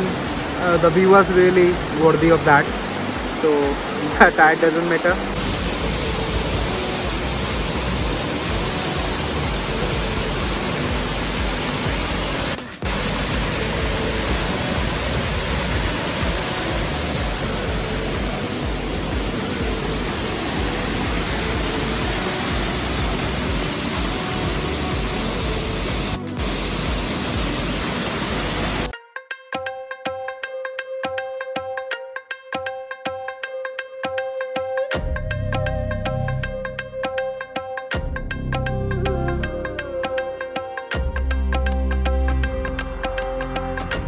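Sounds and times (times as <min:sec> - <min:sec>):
waterfall roaring: 0:00.0 - 0:28.9
music with tabla: 0:00.0 - 0:44.0.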